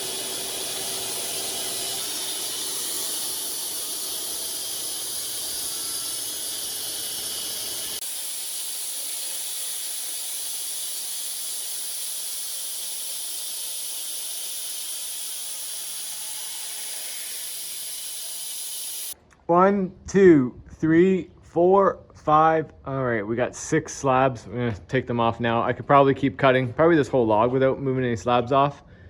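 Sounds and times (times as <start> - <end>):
band saw cutting log: 0.0 - 19.2.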